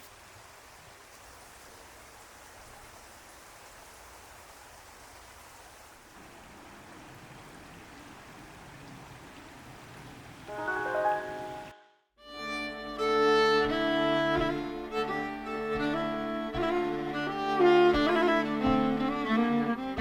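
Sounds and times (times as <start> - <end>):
soft outdoor hiss: 0.0 - 11.7
violin melody: 10.5 - 20.0.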